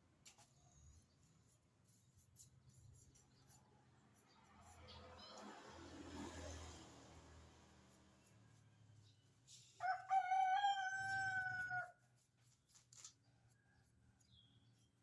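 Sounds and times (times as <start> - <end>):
rooster crowing: 9.8 - 11.9.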